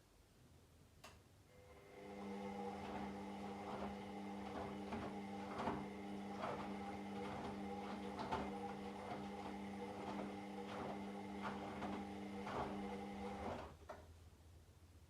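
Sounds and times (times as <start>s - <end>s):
washing machine motor hum: 1.5s - 13.8s.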